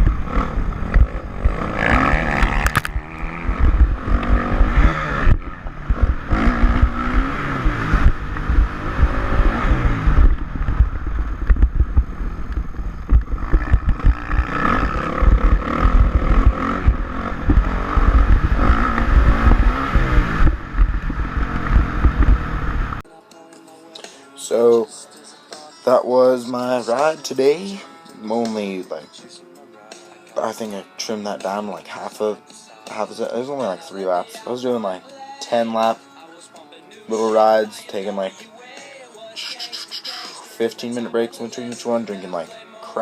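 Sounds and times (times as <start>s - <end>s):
motorcycle engine revving: 0.0s - 23.0s.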